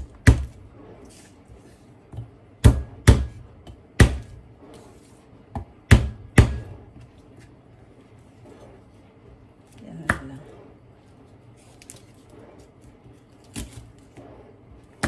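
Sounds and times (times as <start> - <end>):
knife chopping on cutting board: 0.0 - 0.6, 2.6 - 4.4, 5.6 - 6.8.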